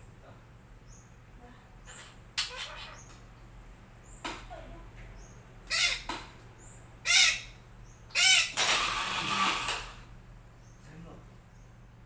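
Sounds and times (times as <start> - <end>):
parakeet calling: 1.8 - 3.1, 5.7 - 6.1, 7.0 - 9.8.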